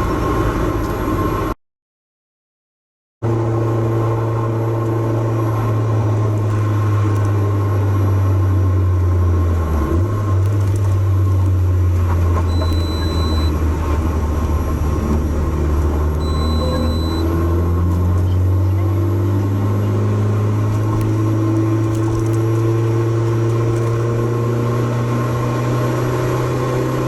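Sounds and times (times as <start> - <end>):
road noise: 0.0 - 1.6, 3.2 - 27.0
car engine droning while driving: 3.2 - 27.0
faint short high beep: 12.5 - 13.6, 16.2 - 17.3.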